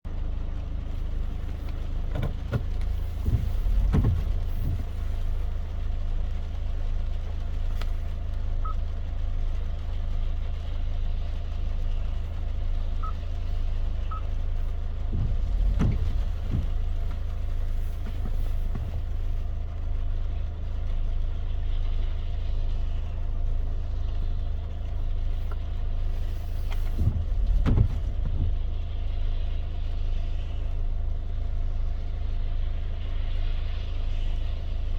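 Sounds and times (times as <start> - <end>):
short low thumps: 0.0 - 6.3, 14.1 - 19.5, 26.2 - 28.8
car interior driving rumble: 0.0 - 34.9
road noise: 0.0 - 34.9
light rain: 0.1 - 34.9.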